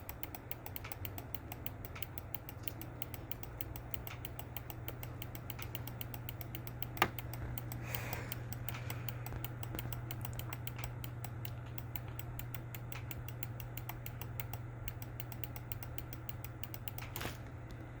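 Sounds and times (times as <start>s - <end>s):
computer mouse clicking: 0.0s - 17.4s
low electrical hum: 0.0s - 18.0s.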